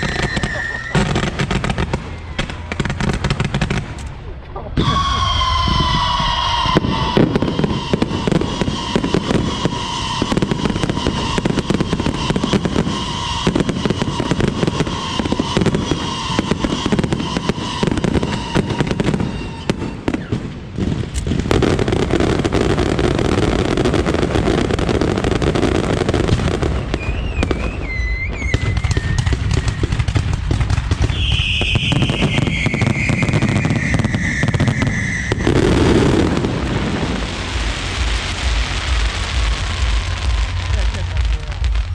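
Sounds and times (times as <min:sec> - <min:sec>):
wavering whistle: 0:00.0 - 0:01.1, 0:04.8 - 0:20.0, 0:27.0 - 0:29.8, 0:31.1 - 0:35.6
fireworks crackling and bangs: 0:00.0 - 0:41.9
fireworks whistling: 0:00.0 - 0:41.9.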